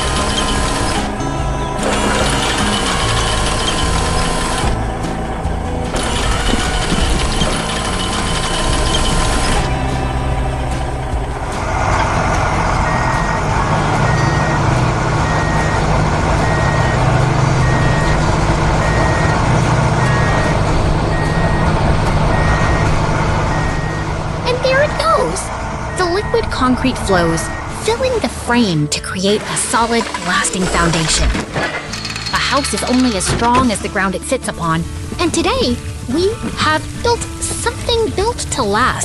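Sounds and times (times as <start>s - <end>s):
truck engine running: 0.0s - 39.0s
reversing alarm beeping: 14.0s - 18.2s, 18.8s - 27.8s.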